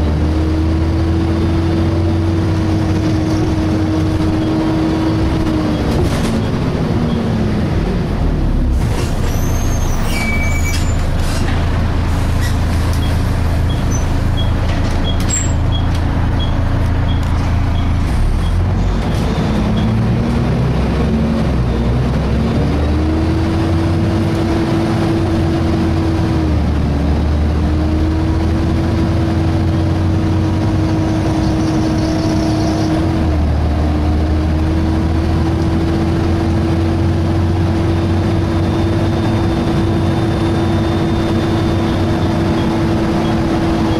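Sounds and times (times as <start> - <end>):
bus diesel engine running: 0.0 - 43.9
brief high squeal: 8.9 - 11.5.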